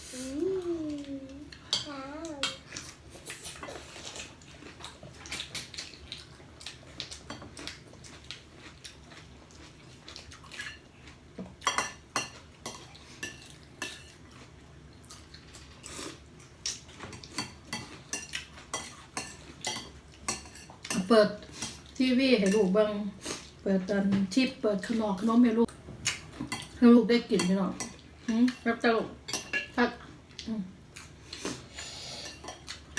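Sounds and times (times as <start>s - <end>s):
cutlery clinking on plates: 17.0s - 21.8s.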